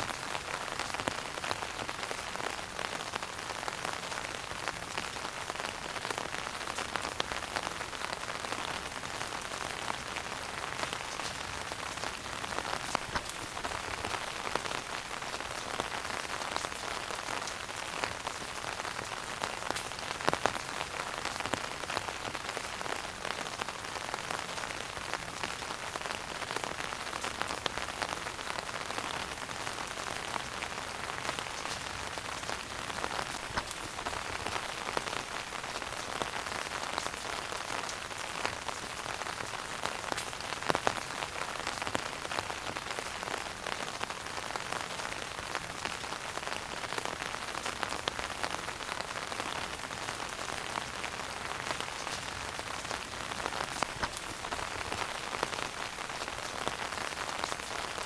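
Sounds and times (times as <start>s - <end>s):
wood fire crackling: 10.0s - 22.7s, 30.3s - 41.0s, 48.2s - 58.0s.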